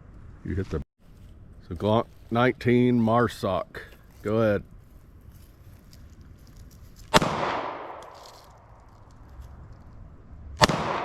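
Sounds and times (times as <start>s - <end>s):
pistol shots echoing: 7.1s - 8.2s, 10.6s - 11.0s.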